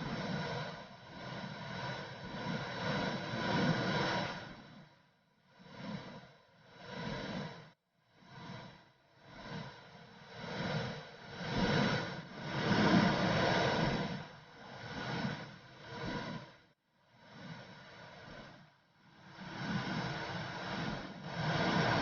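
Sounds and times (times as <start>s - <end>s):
pulsing whooshing noise: 5.5s - 22.0s.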